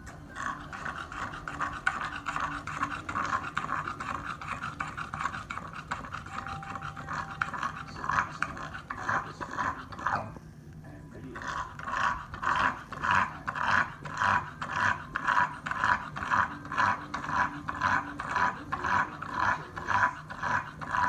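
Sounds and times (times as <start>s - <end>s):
dog panting hard: 0.0s - 10.4s, 11.3s - 21.0s.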